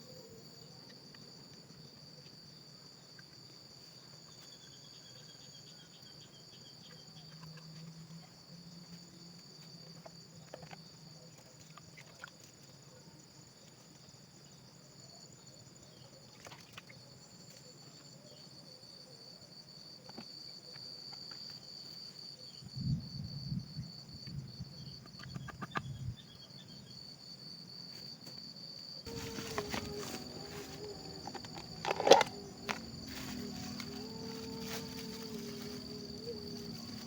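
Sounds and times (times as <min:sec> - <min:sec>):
insects trilling: 0:00.0 - 0:37.0
rustling: 0:29.1 - 0:37.0.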